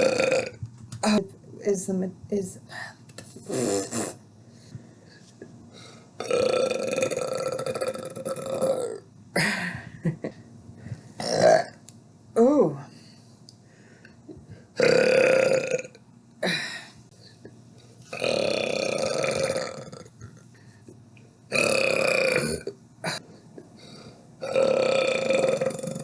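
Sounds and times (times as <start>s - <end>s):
person burping: 0.0s - 0.6s, 6.2s - 9.7s, 11.2s - 11.8s, 14.8s - 16.8s, 18.1s - 20.4s, 21.5s - 23.2s, 24.4s - 26.0s.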